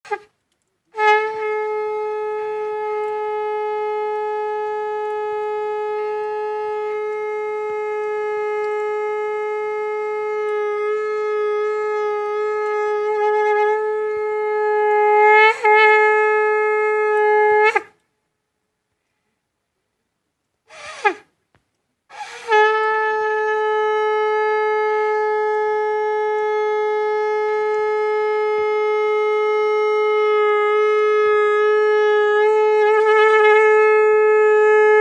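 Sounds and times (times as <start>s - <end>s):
conch shell blown: 0.0s - 18.0s, 20.7s - 21.3s, 22.1s - 35.0s.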